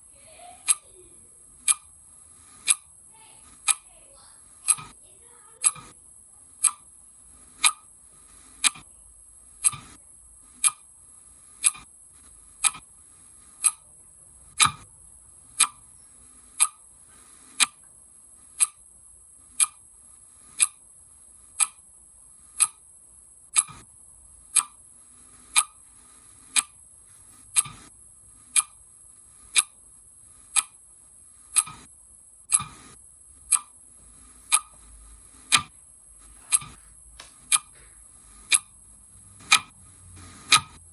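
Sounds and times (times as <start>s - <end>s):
faint high hiss: 0.0s - 40.9s
clock ticking: 0.1s - 7.9s, 8.6s - 8.9s, 9.6s - 10.9s, 11.5s - 11.9s, 12.6s - 12.9s, 13.5s - 14.9s, 15.5s - 15.9s, 16.5s - 17.9s, 18.5s - 18.9s, 19.5s - 19.8s, 20.4s - 20.9s, 21.5s - 21.9s, 22.5s - 22.9s, 23.5s - 23.9s, 24.5s - 25.8s, 26.4s - 26.8s, 27.6s - 27.9s, 28.5s - 28.8s, 29.4s - 29.8s, 30.4s - 30.8s, 31.5s - 31.9s, 32.5s - 40.9s.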